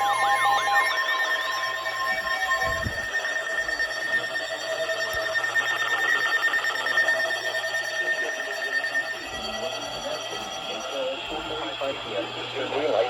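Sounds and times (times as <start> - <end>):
electronic alert tones: 0.0 - 4.2
fast chattering warble: 0.0 - 13.0.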